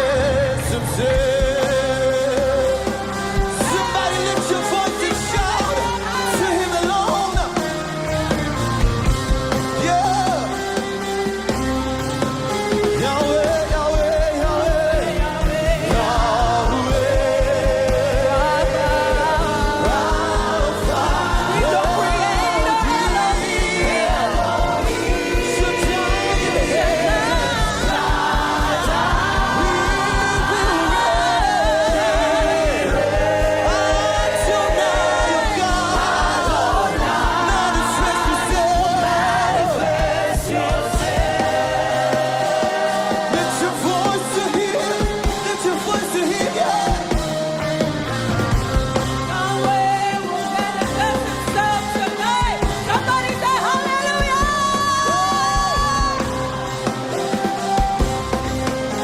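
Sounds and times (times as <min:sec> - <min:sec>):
gospel band and singers: 0:00.0 - 0:59.0.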